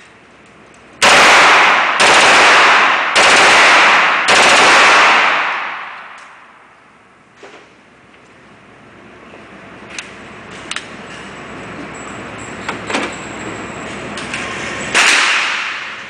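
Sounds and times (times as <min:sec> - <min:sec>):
submachine gun automatic fire: 0:01.0 - 0:05.9.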